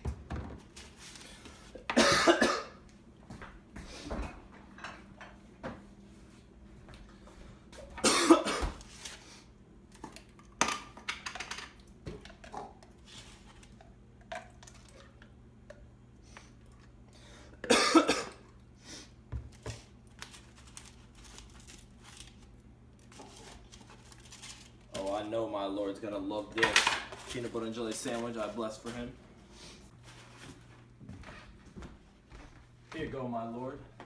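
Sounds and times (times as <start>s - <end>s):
person coughing hard: 1.8s - 2.8s, 8.0s - 8.8s, 17.6s - 18.4s.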